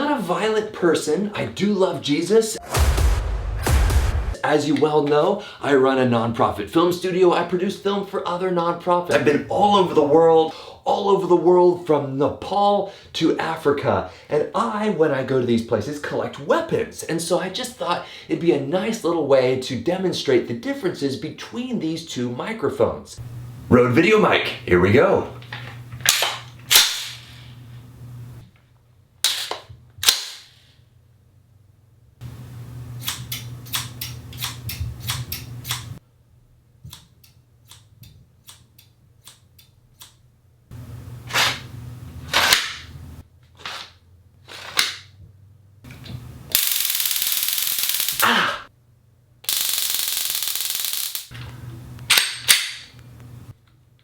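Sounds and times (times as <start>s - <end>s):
loud hissing bursts: 46.5s - 48.4s, 49.5s - 51.3s
weapon cracks: 46.5s - 48.6s, 49.5s - 51.4s.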